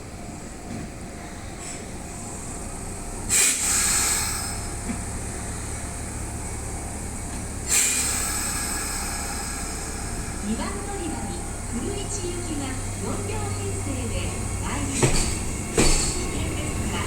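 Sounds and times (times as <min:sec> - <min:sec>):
electric train rumbling: 0:00.0 - 0:17.0
air hissing bursts: 0:03.2 - 0:04.9, 0:07.6 - 0:10.4.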